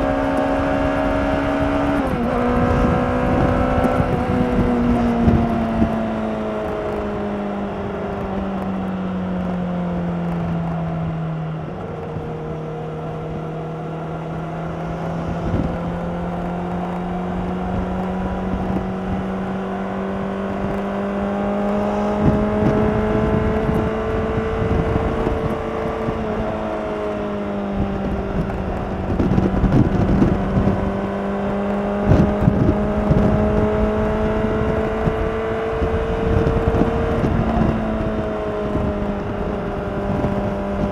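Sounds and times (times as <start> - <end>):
motorcycle engine cruising: 0.0 - 40.9
wind buffeting microphone: 0.0 - 40.9.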